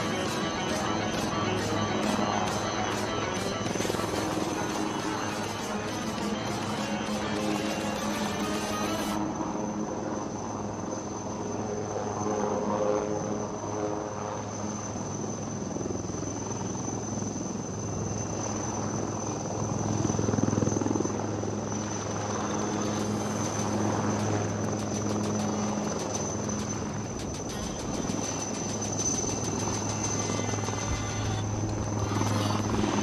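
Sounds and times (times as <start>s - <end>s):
helicopter rotor chop: 0.0s - 9.9s, 20.3s - 33.0s
helicopter engine whine: 0.0s - 12.3s, 12.9s - 33.0s.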